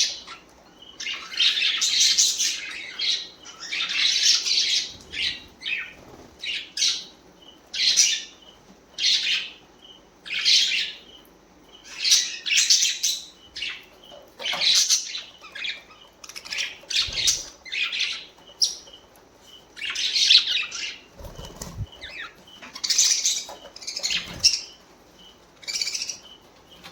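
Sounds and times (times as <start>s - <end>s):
budgerigars chattering: 19.6s - 26.9s.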